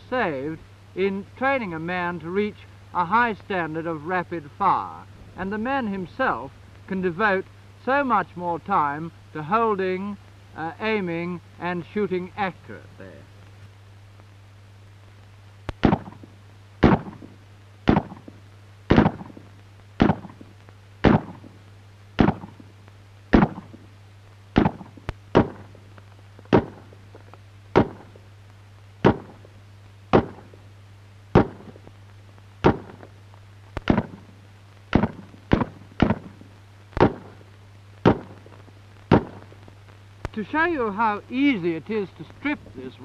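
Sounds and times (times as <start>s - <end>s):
rifle shots with echo: 15.8s - 21.6s, 22.2s - 22.7s, 23.3s - 23.8s, 24.6s - 25.8s, 26.5s - 27.0s, 27.8s - 28.2s, 29.0s - 29.5s, 30.1s - 30.6s, 31.4s - 31.8s, 32.6s - 33.1s, 33.8s - 34.3s, 34.9s - 38.5s, 39.1s - 39.5s.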